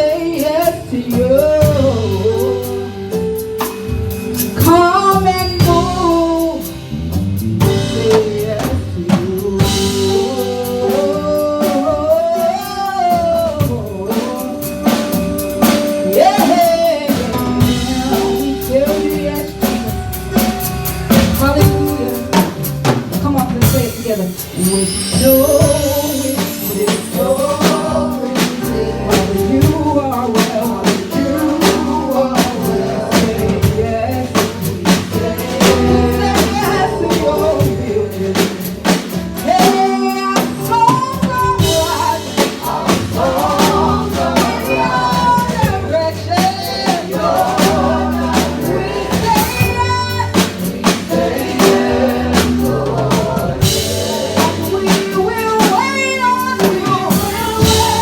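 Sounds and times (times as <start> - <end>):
steady drum beat: 0.0 - 58.0
worship band playing: 0.0 - 58.0
singing: 24.5 - 58.0.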